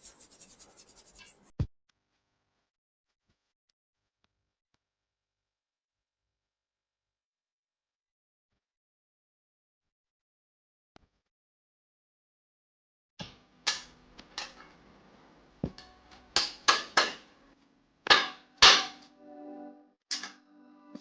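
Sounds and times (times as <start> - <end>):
music: 13.4 - 21.0.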